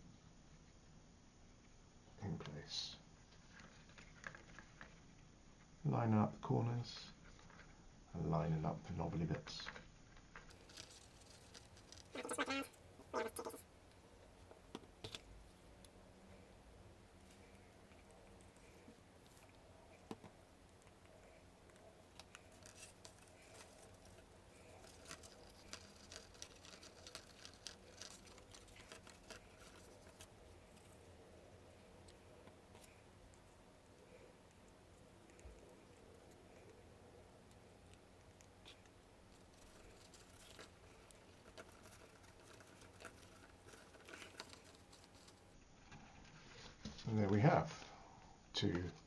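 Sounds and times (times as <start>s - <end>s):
card pieces rustling and ticking: 10.5s - 13.6s, 17.1s - 34.2s, 37.9s - 45.4s.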